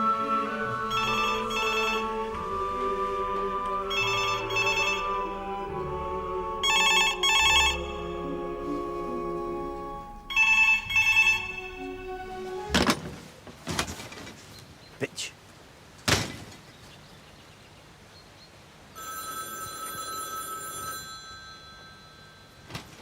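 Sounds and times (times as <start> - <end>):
background music: 0.0 - 13.2
telephone double ring: 0.9 - 2.2, 3.9 - 5.2, 19.0 - 22.7.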